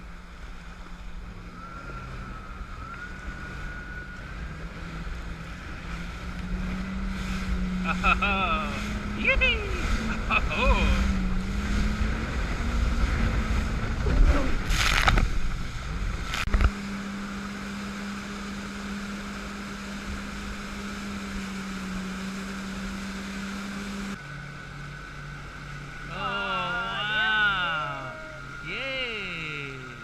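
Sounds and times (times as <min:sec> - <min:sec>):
boat engine droning: 0:00.0 - 0:30.0
water noise: 0:00.0 - 0:30.0
wind buffeting microphone: 0:01.1 - 0:16.8.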